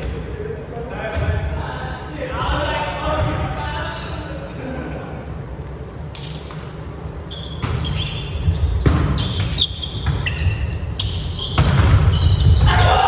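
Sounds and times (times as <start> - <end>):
sneakers squeaking on gym floor: 3.1 - 5.3, 6.1 - 13.0.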